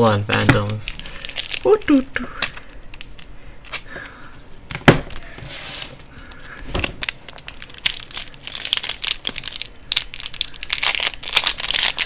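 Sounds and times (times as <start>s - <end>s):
foil wrapper crinkling: 0.3s - 3.9s, 6.5s - 12.0s.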